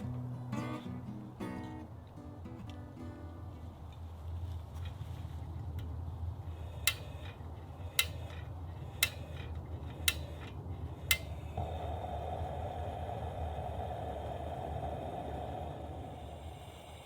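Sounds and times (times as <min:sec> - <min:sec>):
steady low rumble: 0:00.0 - 0:17.0
sharp light clicks: 0:06.8 - 0:11.4.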